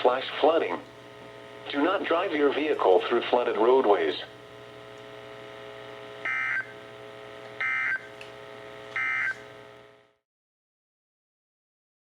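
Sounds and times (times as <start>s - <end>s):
faint steady hum: 0.0s - 10.2s
buzzy data tone bursts: 1.0s - 10.2s.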